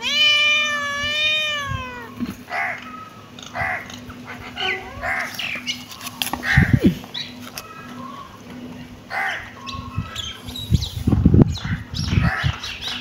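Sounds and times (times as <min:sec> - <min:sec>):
kittens mewing: 0:00.0 - 0:05.4.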